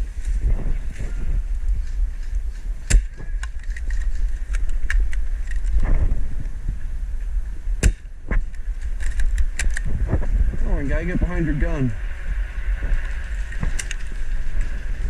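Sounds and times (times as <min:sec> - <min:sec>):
wind rumble on microphone: 0:00.0 - 0:15.0
sharp clicks: 0:07.8 - 0:09.9.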